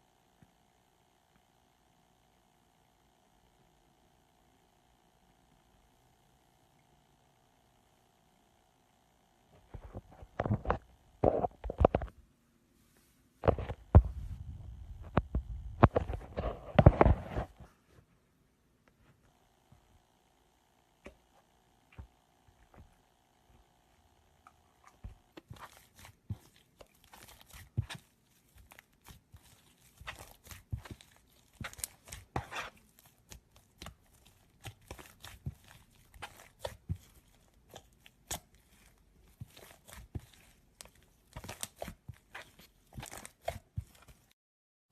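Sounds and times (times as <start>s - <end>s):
slime squelching: 24.4s - 44.4s.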